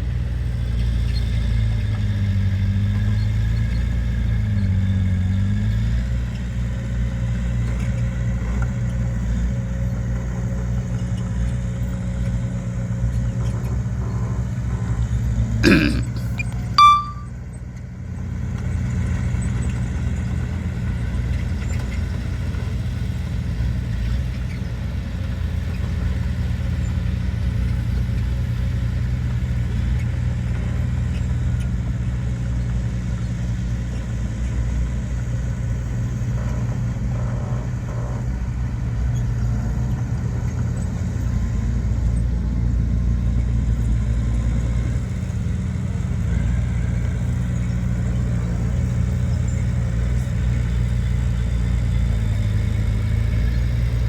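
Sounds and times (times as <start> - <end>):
diesel machinery engine drone: 0.0 - 54.0
high-pitched tone: 16.8 - 17.3.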